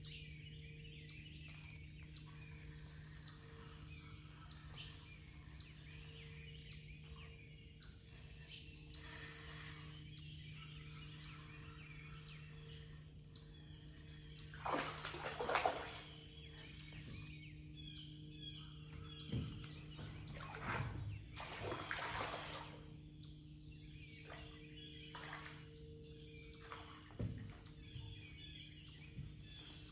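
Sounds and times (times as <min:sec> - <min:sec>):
birds chirping: 0:00.0 - 0:29.9
steady low hum: 0:00.0 - 0:29.9
water splashing: 0:14.5 - 0:16.2, 0:20.4 - 0:22.9, 0:25.2 - 0:25.7.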